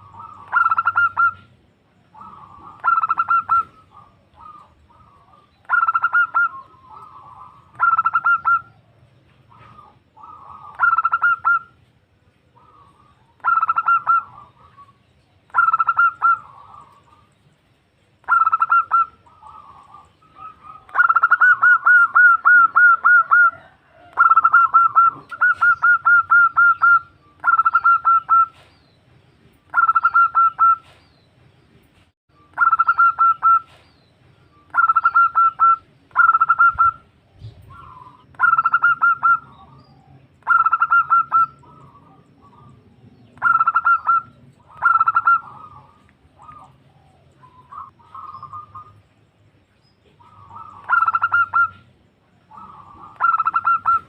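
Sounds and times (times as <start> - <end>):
dove cooing: 0.0 - 11.8, 12.4 - 17.3, 18.2 - 28.7, 29.7 - 31.0, 32.6 - 33.9, 34.6 - 49.0, 50.0 - 54.0.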